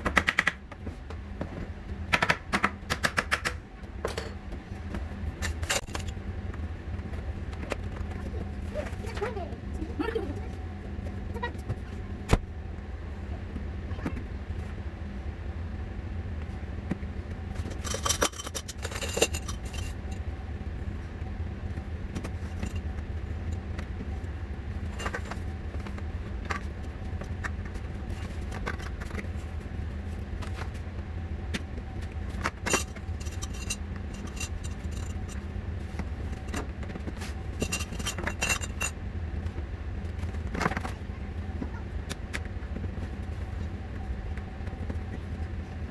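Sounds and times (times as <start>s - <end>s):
steady low hum: 0.0s - 45.9s
plastic parts clicking and clattering: 17.7s - 19.9s.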